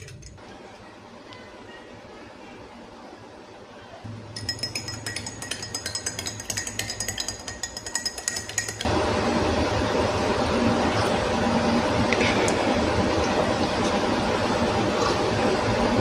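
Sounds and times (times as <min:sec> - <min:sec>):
glass clinking: 0:04.3 - 0:08.9.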